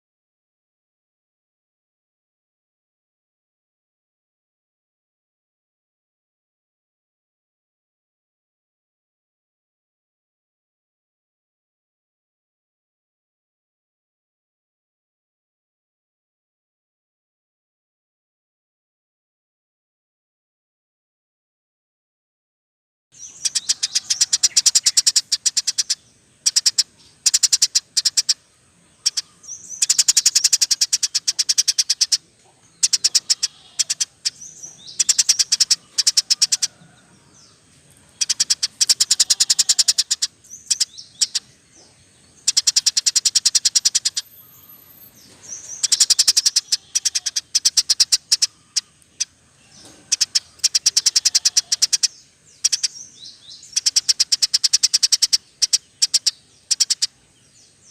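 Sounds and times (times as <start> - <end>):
small birds chirping and trilling: 23.2 - 57.9.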